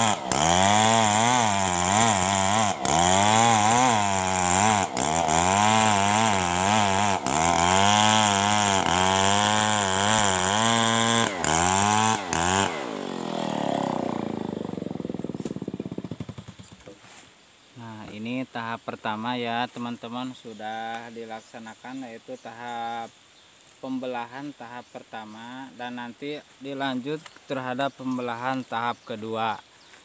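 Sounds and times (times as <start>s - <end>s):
chainsaw cutting through wood: 0.0s - 17.0s.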